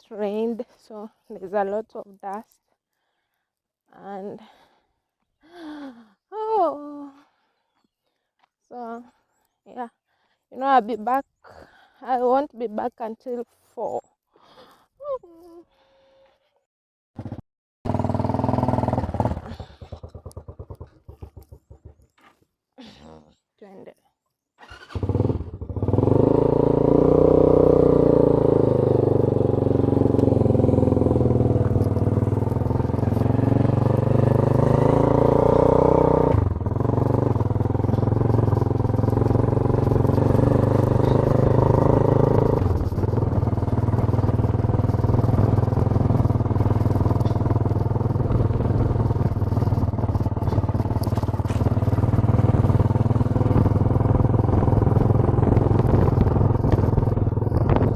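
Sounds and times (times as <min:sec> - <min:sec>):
motorcycle engine running: 0:17.2 - 0:22.3, 0:24.7 - 0:57.9.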